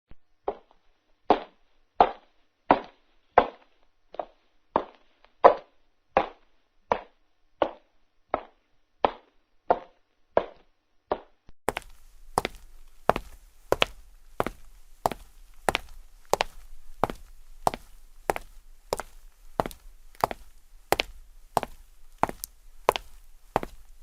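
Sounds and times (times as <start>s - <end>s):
footsteps walking: 11.7s - 24.0s.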